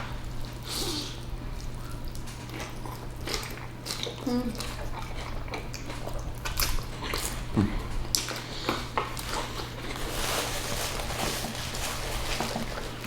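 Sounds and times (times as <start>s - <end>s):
wet chewing and smacking: 0.4s - 10.1s.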